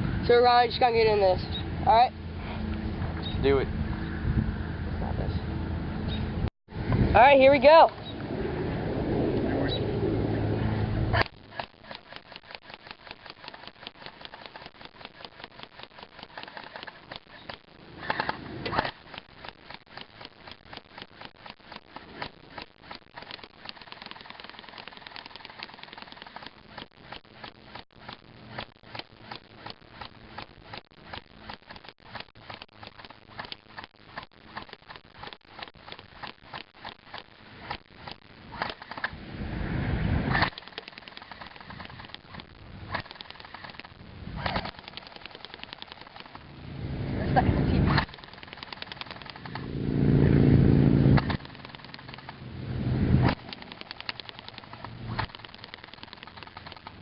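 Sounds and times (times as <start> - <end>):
louder fuller noise: 49.4 - 51.2.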